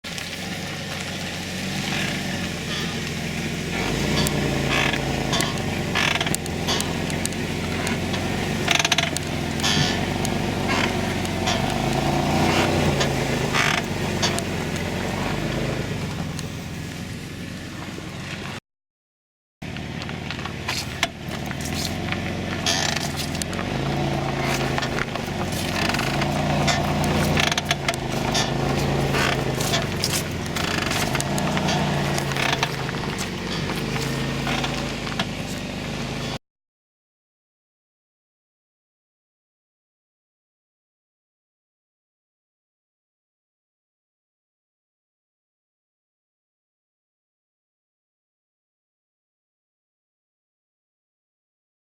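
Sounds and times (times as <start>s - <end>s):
minivan engine running: 0.0s - 18.6s, 19.6s - 36.4s
drum brake scraping and clicking: 0.1s - 18.6s, 19.7s - 36.4s.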